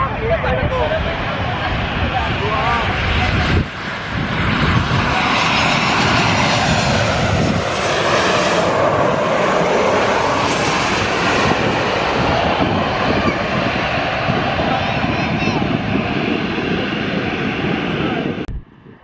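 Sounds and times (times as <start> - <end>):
jet engine roar: 0.0 - 19.0.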